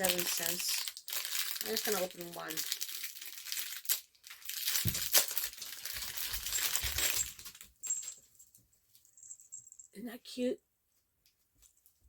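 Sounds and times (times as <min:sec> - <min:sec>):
plastic packaging crinkling: 0:00.0 - 0:08.1.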